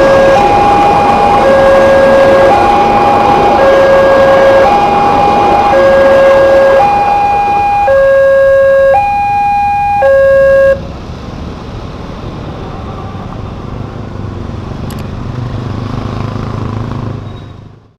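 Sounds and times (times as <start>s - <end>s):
level crossing two-tone alarm: 0.0s - 10.8s
vehicle engines running: 0.0s - 17.9s.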